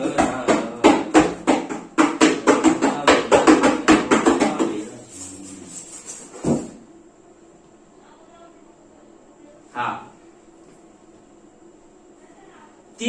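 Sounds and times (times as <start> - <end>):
music with steady beat: 0.0 - 4.8.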